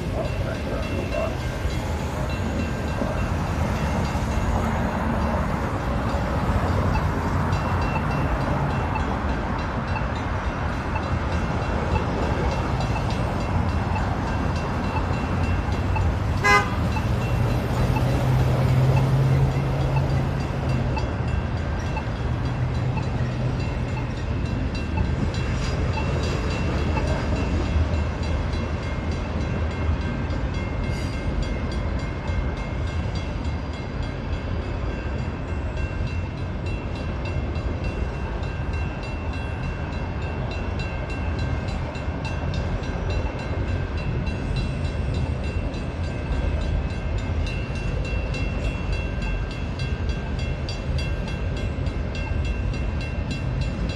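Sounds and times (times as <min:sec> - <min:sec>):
train wheels rumbling on rail: 0:00.0 - 0:53.9.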